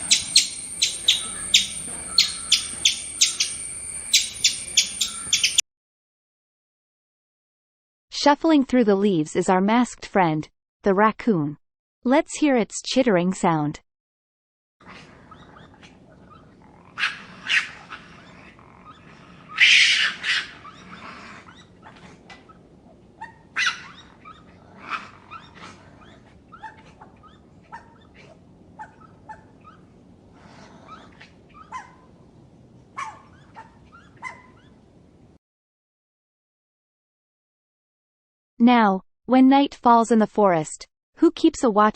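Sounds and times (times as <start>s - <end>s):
raccoon chittering: 0.0s - 5.6s, 14.9s - 29.8s.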